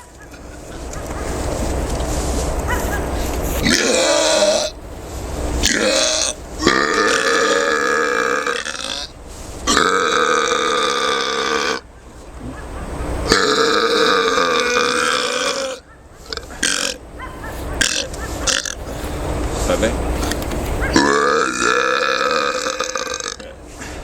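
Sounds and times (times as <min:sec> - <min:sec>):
person burping: 0:03.6 - 0:04.7, 0:05.7 - 0:09.1, 0:09.7 - 0:11.8, 0:21.0 - 0:23.6.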